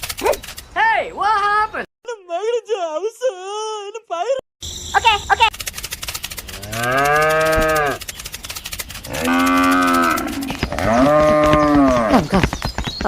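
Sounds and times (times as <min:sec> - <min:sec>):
fast clicking: 0:00.0 - 0:00.7, 0:05.4 - 0:13.0
cow mooing: 0:06.6 - 0:08.0, 0:09.1 - 0:12.1.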